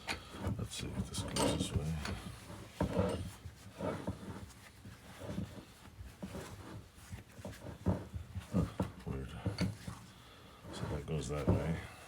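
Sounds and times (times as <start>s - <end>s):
metal knocks and scrapes: 0.2s - 6.8s, 10.6s - 12.0s.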